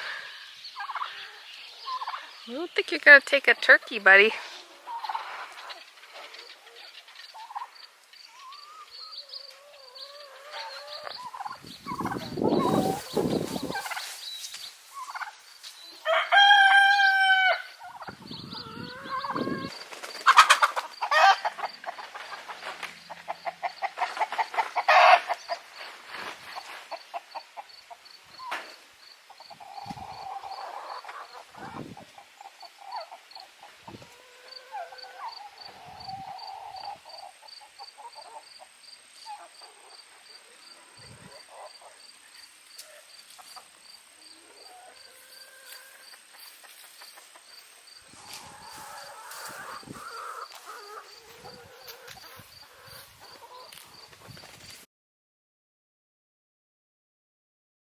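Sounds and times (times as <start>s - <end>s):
chickens clucking: 0.0s - 54.7s
turkey gobbling: 0.8s - 1.2s, 1.8s - 2.3s, 4.8s - 7.8s, 8.4s - 14.2s, 15.0s - 15.4s, 16.1s - 25.5s, 29.3s - 31.8s, 32.4s - 38.5s, 44.4s - 53.9s
crickets chirping: 5.8s - 10.4s, 11.1s - 16.1s, 25.4s - 31.0s, 34.1s - 54.4s
rooster crowing: 16.0s - 17.8s.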